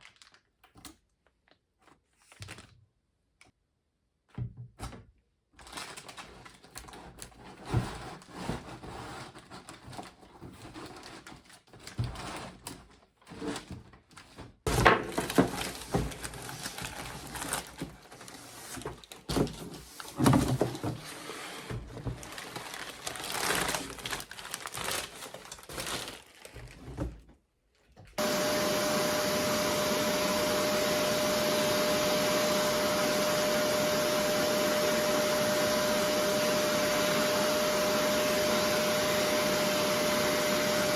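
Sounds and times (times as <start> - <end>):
knocks and clatter of handling: 9.4 - 22.7
machine motor whining: 28.2 - 40.9.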